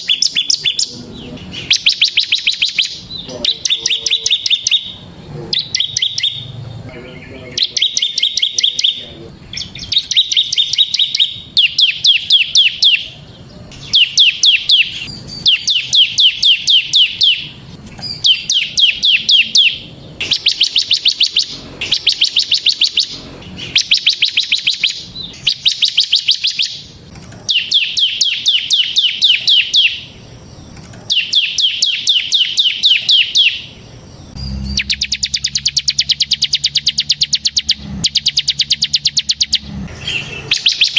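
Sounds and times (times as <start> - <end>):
bird ticking trills: 0.0 - 40.9
low hum: 17.1 - 25.6, 33.7 - 40.9.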